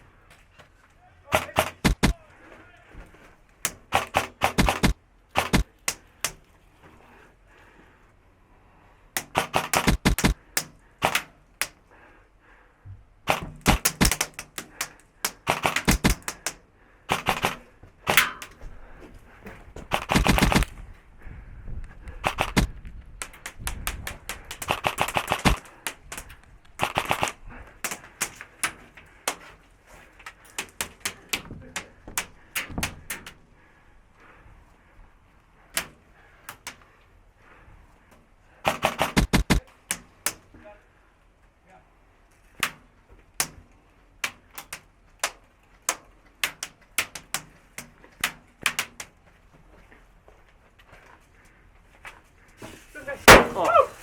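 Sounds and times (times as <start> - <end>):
airsoft guns firing: 1.3 - 2.2, 3.6 - 6.5, 9.2 - 11.8, 13.2 - 18.6, 19.9 - 20.7, 22.2 - 29.4, 38.6 - 40.1, 53.2 - 54.0.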